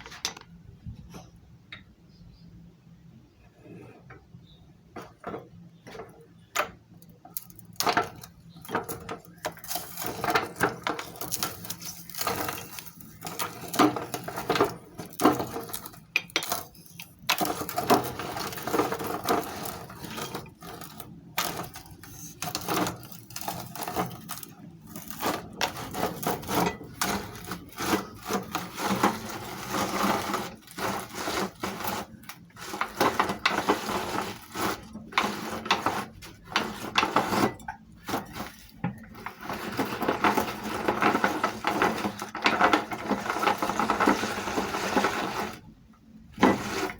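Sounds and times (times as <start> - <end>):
sharp clicks and knocks: 0.0 - 2.0
meat grinder scraping and rubbing: 5.0 - 46.9.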